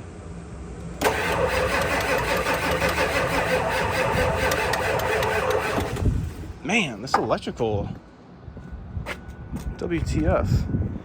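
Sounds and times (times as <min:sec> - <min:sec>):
diesel engine cranking: 0:00.8 - 0:06.6.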